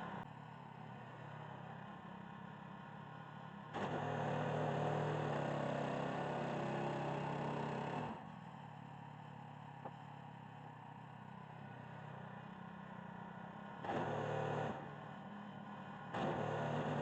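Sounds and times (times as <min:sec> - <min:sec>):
engine running: 0:11.6 - 0:17.0.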